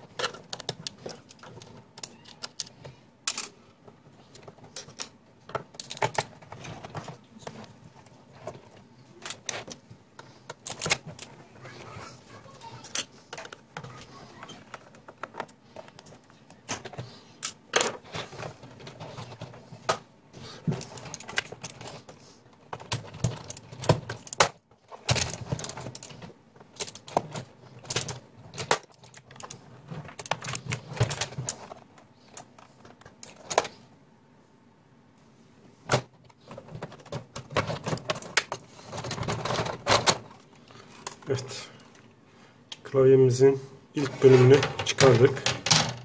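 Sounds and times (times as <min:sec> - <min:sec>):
plastic keyboard clicks and rattles: 0:00.0 - 0:03.5, 0:04.3 - 0:11.4, 0:12.5 - 0:20.0, 0:20.7 - 0:33.8, 0:35.9 - 0:41.4
handling noise: 0:00.0 - 0:33.9, 0:35.8 - 0:41.5.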